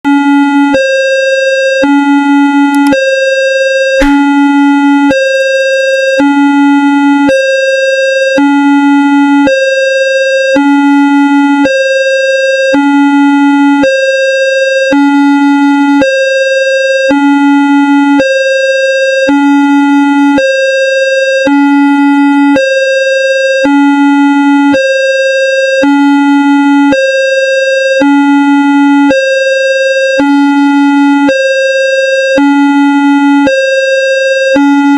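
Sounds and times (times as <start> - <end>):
alternating electronic alarm tones: 0.1 - 34.9
short click: 2.8 - 3.0, 4.0 - 4.2.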